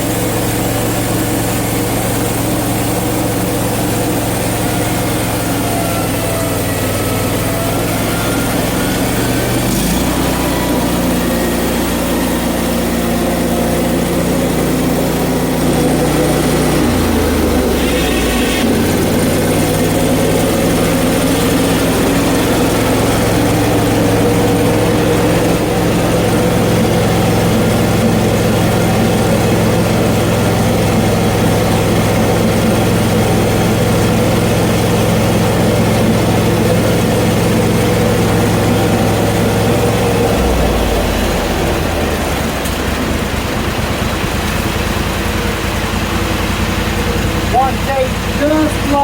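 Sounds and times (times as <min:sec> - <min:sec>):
sawmill engine running: 0:00.0 - 0:49.0
band blade sawing log: 0:00.3 - 0:27.9.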